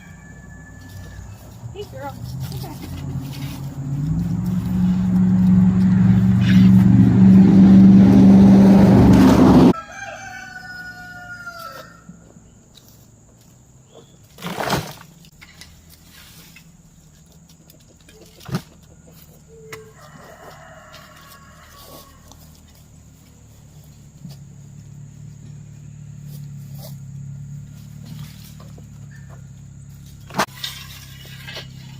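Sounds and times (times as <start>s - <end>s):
rooster crowing: 0.0s - 1.6s, 4.7s - 12.2s, 19.5s - 22.7s
loud low hum: 2.2s - 9.8s
rising rushing noise: 2.8s - 9.8s.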